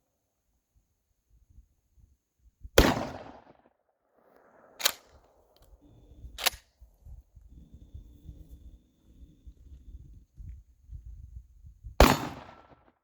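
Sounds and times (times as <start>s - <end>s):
shotgun firing: 2.8s - 3.5s, 12.0s - 12.8s.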